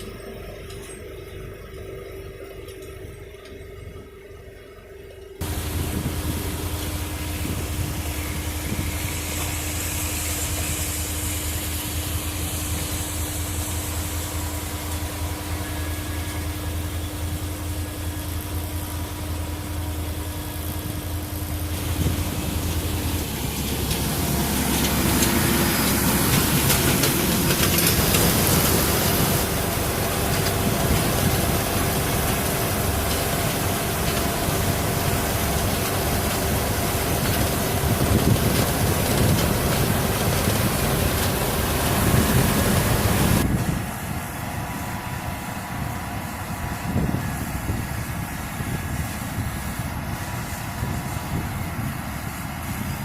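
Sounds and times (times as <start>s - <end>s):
tractor engine humming: 0.0s - 53.0s.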